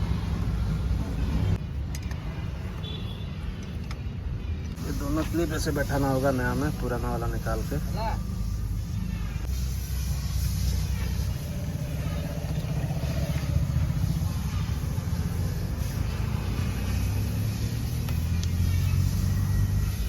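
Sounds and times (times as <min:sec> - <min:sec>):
vehicle engine running: 0:08.2 - 0:20.0.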